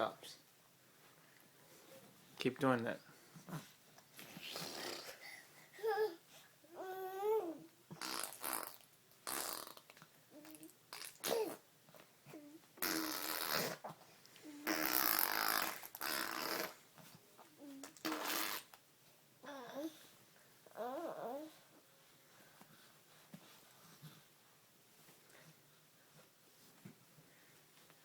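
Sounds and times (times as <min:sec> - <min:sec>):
baby blowing raspberries: 0:04.3 - 0:05.4, 0:07.9 - 0:11.6, 0:12.8 - 0:13.9, 0:14.5 - 0:16.8, 0:17.8 - 0:18.8
baby babbling coos: 0:04.5 - 0:07.7, 0:19.4 - 0:20.0, 0:20.7 - 0:21.6.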